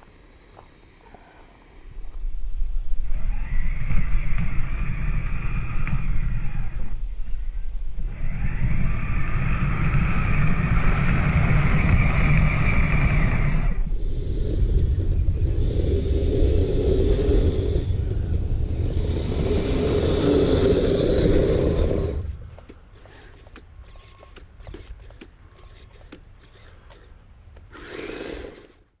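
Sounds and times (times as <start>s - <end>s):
radio-controlled vehicle motor: 8.3s - 28.9s.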